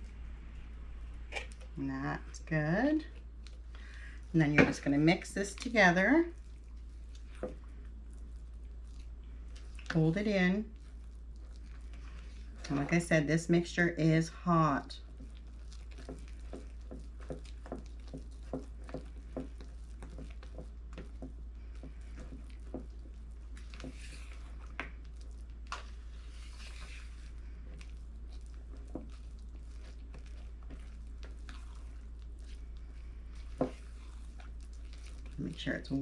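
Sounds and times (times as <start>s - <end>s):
thick mixture squishing in bowl: 0.0s - 36.0s.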